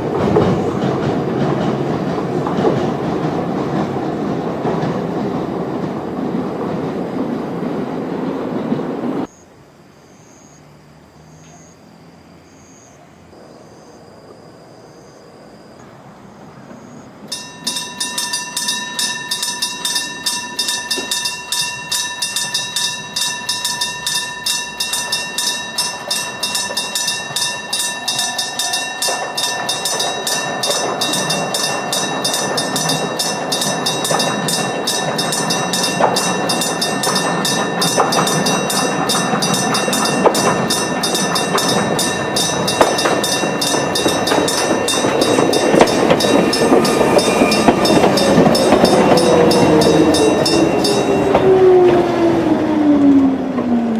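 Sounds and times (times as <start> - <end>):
train running noise: 0.0 - 9.5, 13.0 - 53.9
level crossing bell ringing: 17.3 - 52.3.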